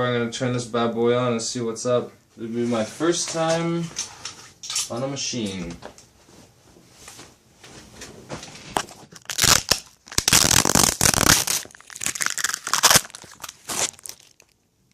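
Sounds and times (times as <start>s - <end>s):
rustling and crinkling: 5.7s - 14.9s.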